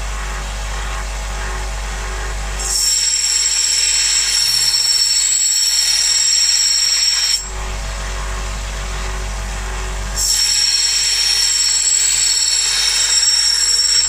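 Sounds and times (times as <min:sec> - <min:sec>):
power tool grinding steel: 0:02.6 - 0:07.6, 0:10.0 - 0:14.0.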